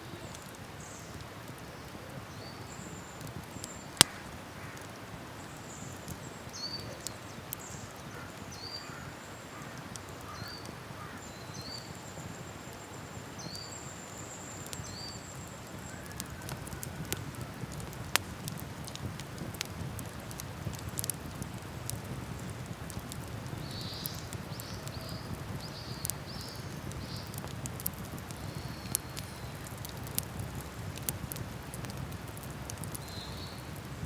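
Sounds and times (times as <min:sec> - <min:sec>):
campfire crackling and popping: 0:00.0 - 0:34.0
small bird chirping: 0:23.6 - 0:27.5, 0:32.9 - 0:33.7.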